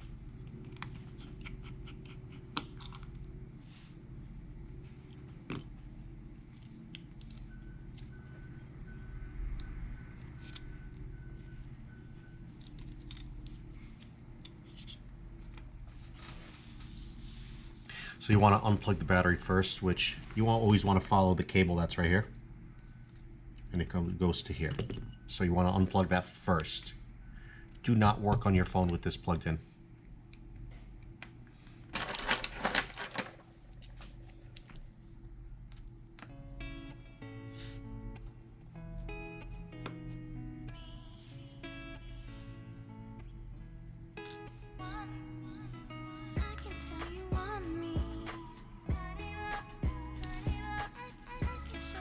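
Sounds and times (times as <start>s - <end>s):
low electrical hum: 0.0s - 52.0s.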